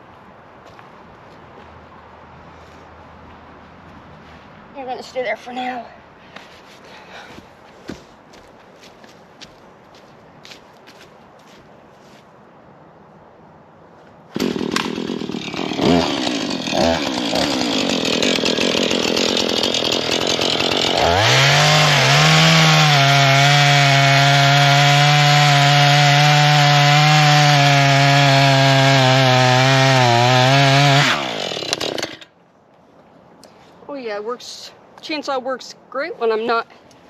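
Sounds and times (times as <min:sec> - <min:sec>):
chainsaw sawing wood: 0:14.3 - 0:32.3.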